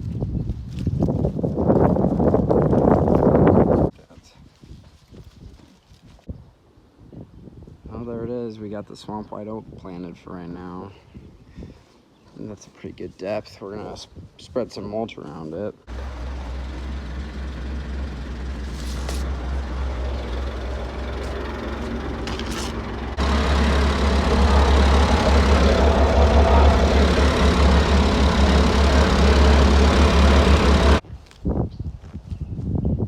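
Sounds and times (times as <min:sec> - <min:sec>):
tractor engine running: 0:15.9 - 0:31.0.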